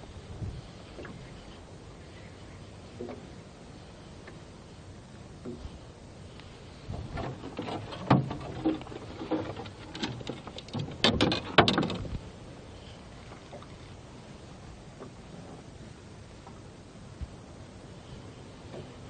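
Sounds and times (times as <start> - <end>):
knocking and clattering in rowboat: 5.4 - 5.7, 6.9 - 12.2.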